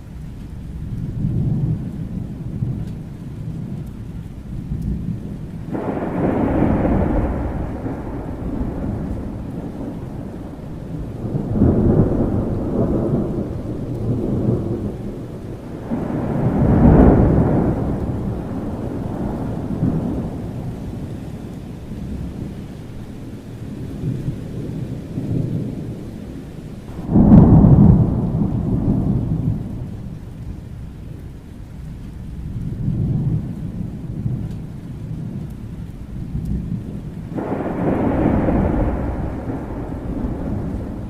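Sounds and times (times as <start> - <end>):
low rolling thunder: 0.0 - 41.0
steady rain: 0.0 - 41.0
loud thunderclap: 4.9 - 21.1, 26.9 - 30.7, 36.3 - 41.0.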